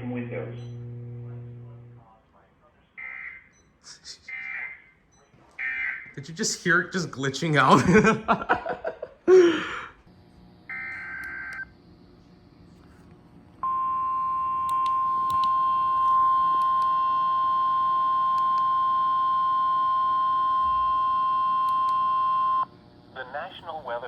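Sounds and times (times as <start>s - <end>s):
loud steady alarm tone: 0.0s - 2.0s, 10.7s - 11.8s, 13.6s - 22.7s.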